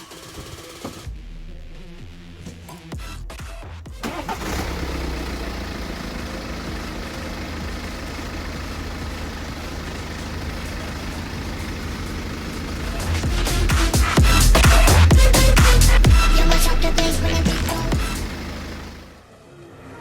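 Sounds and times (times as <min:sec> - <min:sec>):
diesel engine idling: 0:04.0 - 0:19.2.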